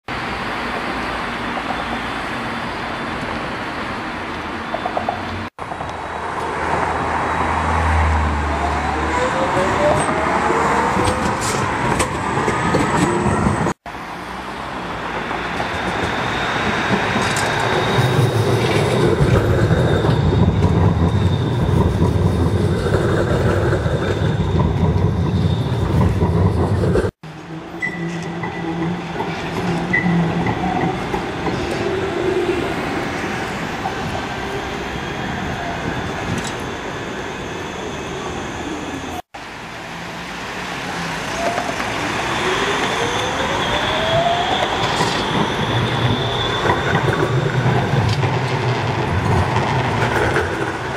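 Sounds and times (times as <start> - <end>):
tram wheels rumbling on rails: 0.1 - 50.9
high-pitched wheel squeal: 15.6 - 22.3, 23.9 - 26.7, 27.4 - 39.2, 41.0 - 48.0.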